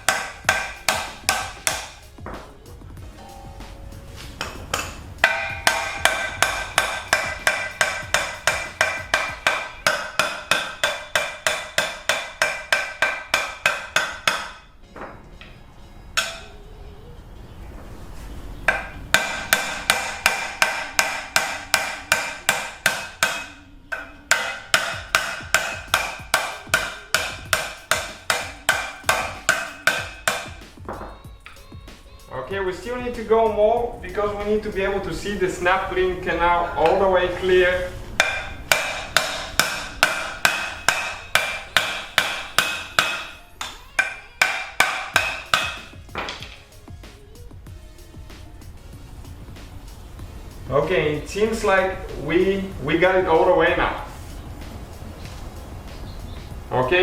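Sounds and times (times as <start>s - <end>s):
hammer striking steel: 0.0s - 15.2s, 16.2s - 16.6s, 18.7s - 35.9s, 36.7s - 47.6s.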